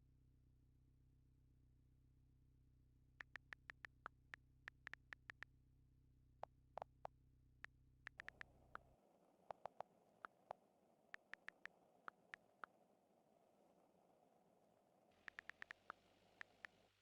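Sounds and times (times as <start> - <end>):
faint low hum: 0.0 - 17.0
small sharp clicks: 3.2 - 5.5, 8.1 - 8.8, 9.5 - 12.7, 15.2 - 17.0.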